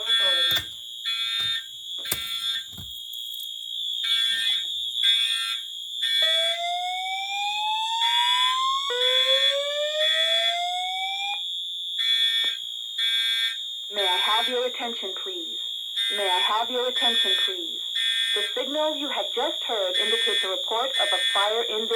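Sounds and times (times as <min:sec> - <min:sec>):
pulsing alarm horn: 0:00.0 - 0:02.7, 0:16.0 - 0:21.9.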